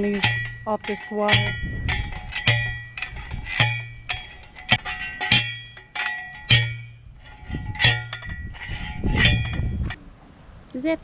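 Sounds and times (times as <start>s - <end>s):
metal fence panels clanging: 0.0s - 10.0s.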